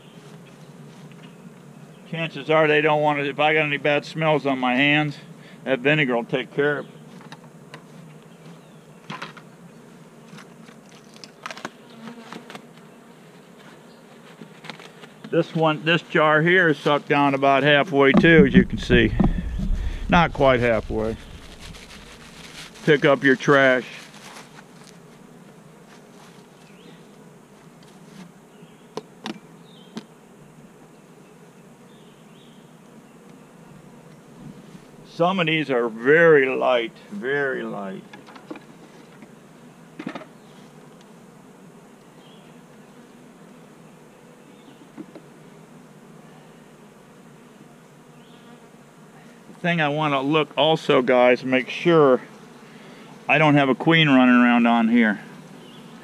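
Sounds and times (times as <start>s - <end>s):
honeybees buzzing: 0.0s - 56.0s.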